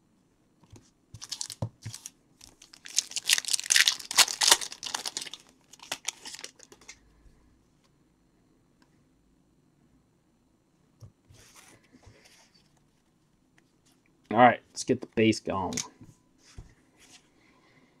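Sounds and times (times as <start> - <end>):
plastic wrapper tearing and crinkling: 1.2 - 7.0.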